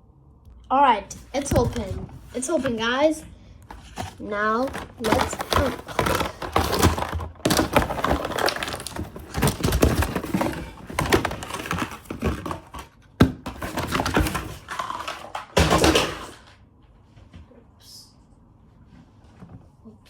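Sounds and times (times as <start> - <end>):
packaging rustling and crackling: 3.6 - 16.0.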